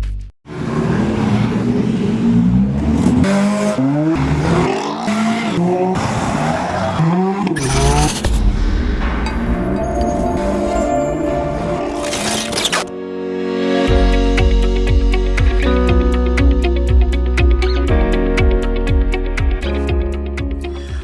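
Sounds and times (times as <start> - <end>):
car engine revving: 0.5 - 12.8.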